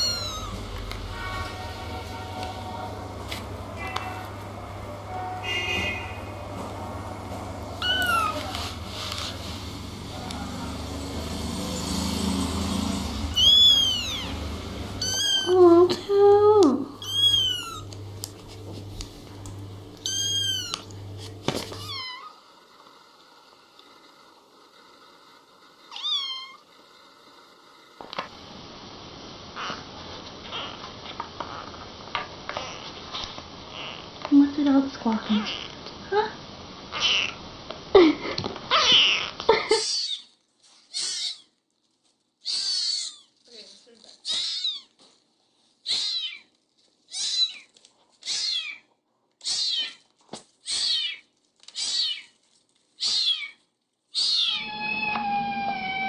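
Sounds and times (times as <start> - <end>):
kitten meowing: 0.0 - 0.6, 7.8 - 8.5, 13.3 - 14.4, 15.0 - 16.0, 17.0 - 18.0, 20.0 - 20.9, 21.8 - 22.3, 40.9 - 41.4, 42.4 - 43.3, 44.2 - 44.9, 45.9 - 46.4, 47.1 - 48.8, 49.4 - 50.0, 51.8 - 52.3, 53.0 - 53.6, 54.2 - 56.0
steady low hum: 0.0 - 22.0, 54.6 - 56.0.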